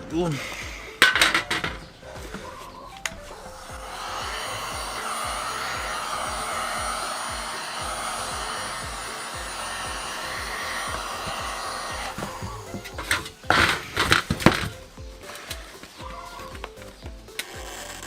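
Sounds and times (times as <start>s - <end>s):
heat gun blowing: 3.3s - 16.5s.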